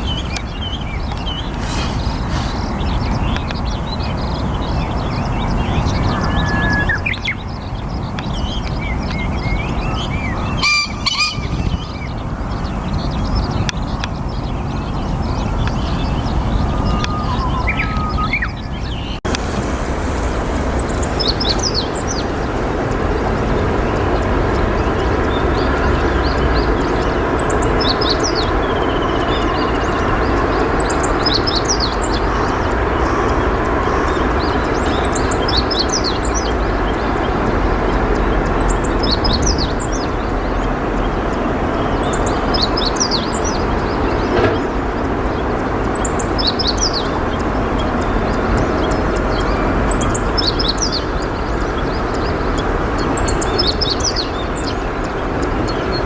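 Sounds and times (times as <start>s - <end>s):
songbird chirping: 0.0s - 56.0s
loud rushing noise: 1.2s - 6.4s, 19.0s - 27.1s.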